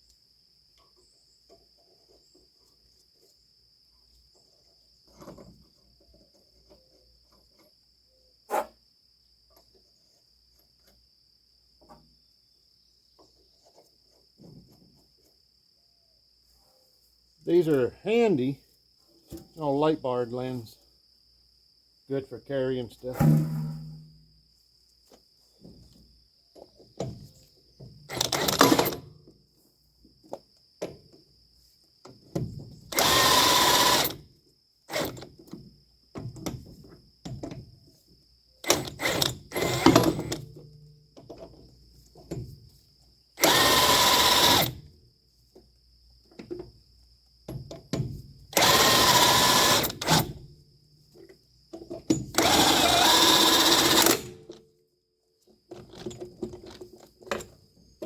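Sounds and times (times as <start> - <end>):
power tool bursts: 28.1 - 29.0, 32.9 - 34.2, 34.9 - 35.2, 38.6 - 40.4, 43.4 - 44.8, 48.5 - 50.4, 52.3 - 54.4.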